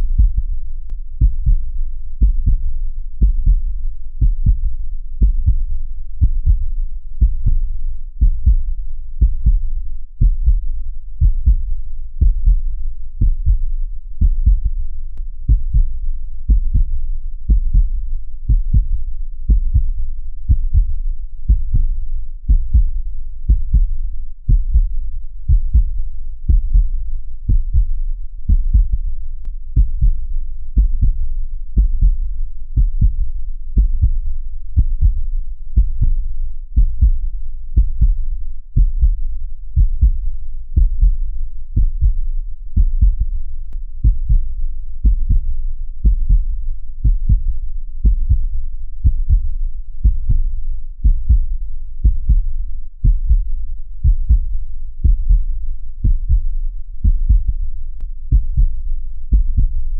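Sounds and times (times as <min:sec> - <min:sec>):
heartbeat thumps: 0:00.0 - 0:59.9.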